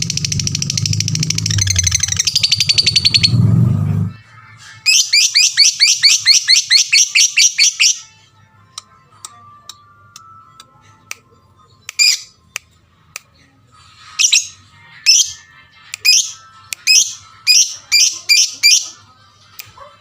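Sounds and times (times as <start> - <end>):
lovebird shrill chirps: 0.2 - 3.4, 4.8 - 8.1, 14.2 - 15.4, 16.0 - 18.8.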